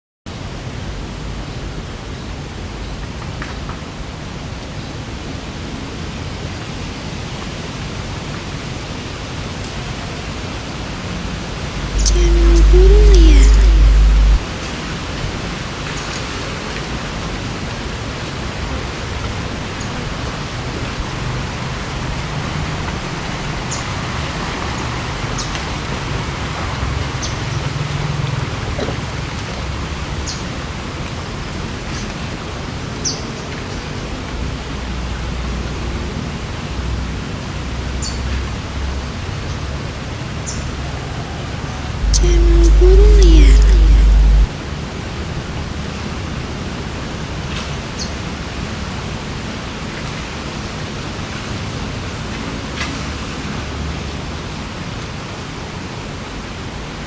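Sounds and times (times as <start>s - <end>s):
low hum: 12.0s - 14.4s, 42.0s - 44.6s.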